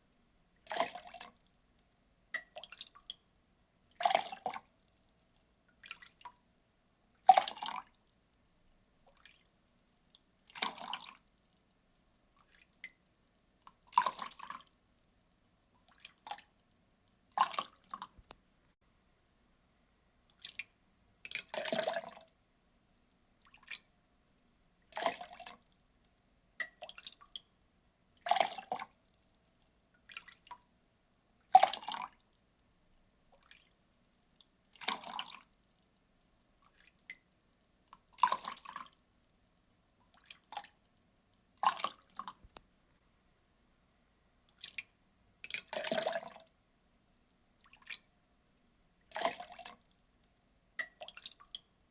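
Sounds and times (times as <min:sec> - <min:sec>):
faint water drips: 0:00.0 - 0:18.5, 0:20.3 - 0:42.8, 0:43.8 - 0:51.9
water pouring in splashes: 0:07.2 - 0:07.9, 0:10.5 - 0:11.2, 0:13.9 - 0:14.7, 0:21.3 - 0:22.2, 0:24.9 - 0:25.6, 0:33.4 - 0:33.7, 0:34.7 - 0:35.5, 0:45.4 - 0:46.5, 0:49.1 - 0:49.8.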